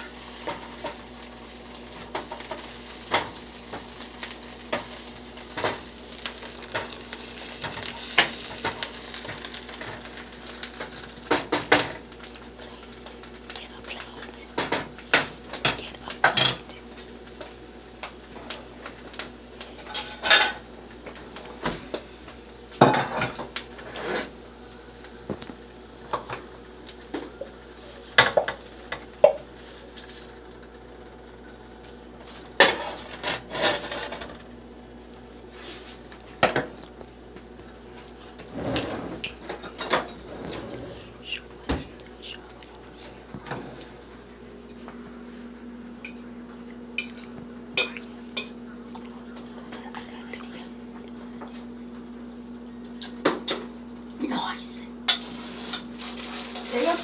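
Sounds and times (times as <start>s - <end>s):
metal utensils clinking on pans: 19.8s - 20.6s.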